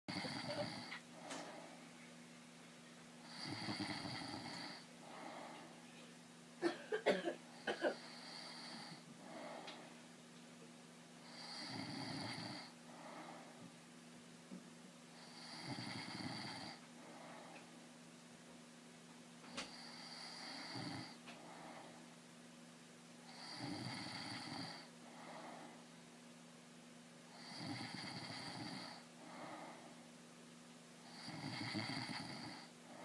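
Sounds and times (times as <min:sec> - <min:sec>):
man snoring: 0:00.1 - 0:01.0, 0:03.3 - 0:05.5, 0:07.8 - 0:09.7, 0:11.3 - 0:13.3, 0:15.2 - 0:17.3, 0:19.6 - 0:21.7, 0:23.3 - 0:25.6, 0:27.3 - 0:29.7, 0:31.1 - 0:33.0
soft breathing: 0:00.2 - 0:02.2, 0:03.2 - 0:06.2, 0:08.1 - 0:10.0, 0:11.6 - 0:13.7, 0:16.5 - 0:17.8, 0:19.5 - 0:22.2, 0:24.7 - 0:26.0, 0:28.9 - 0:30.1.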